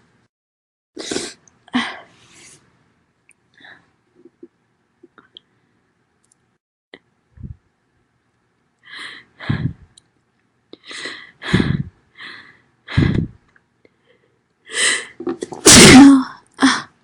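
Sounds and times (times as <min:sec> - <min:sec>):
woman sneezing: 0:15.6 - 0:16.9.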